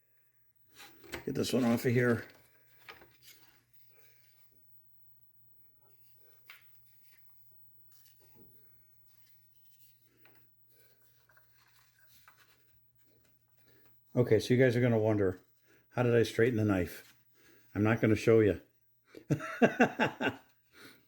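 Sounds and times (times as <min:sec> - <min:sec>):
faint clicks and rustles: 0:00.7 - 0:04.6, 0:05.8 - 0:14.1.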